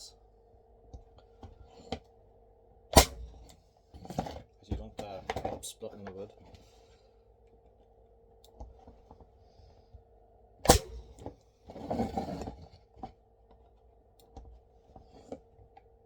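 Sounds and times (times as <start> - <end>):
nail gun firing: 2.9 - 3.4, 10.6 - 11.1.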